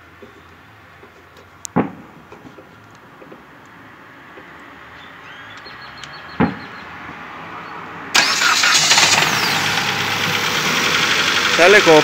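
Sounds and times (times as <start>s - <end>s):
car engine starting and running: 8.1s - 12.0s.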